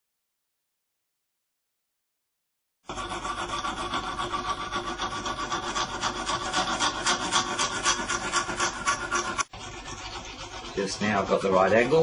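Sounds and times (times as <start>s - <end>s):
file rasping on blade: 2.8s - 12.0s.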